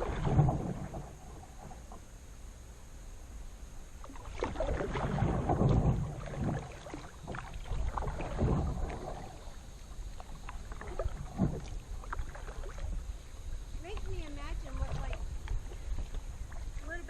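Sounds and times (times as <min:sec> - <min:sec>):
paddle knocking against hull: 0:00.0 - 0:02.0, 0:04.0 - 0:09.5, 0:10.1 - 0:13.0
paddle strokes splashing in water: 0:00.0 - 0:02.1, 0:04.0 - 0:17.0.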